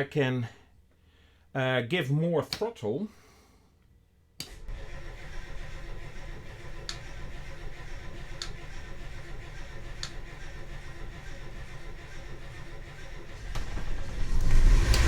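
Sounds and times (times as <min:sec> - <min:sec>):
diesel engine rumbling: 0:04.6 - 0:15.0.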